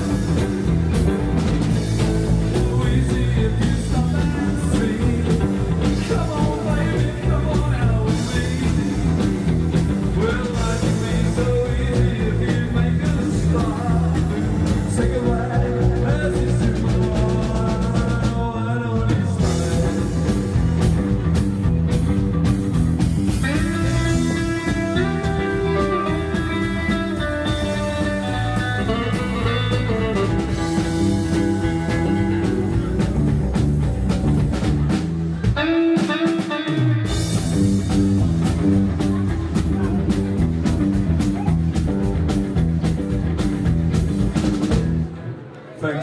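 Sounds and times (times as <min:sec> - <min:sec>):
live rock band playing: 0:00.0 - 0:45.7
electric guitar notes ringing: 0:23.4 - 0:33.0.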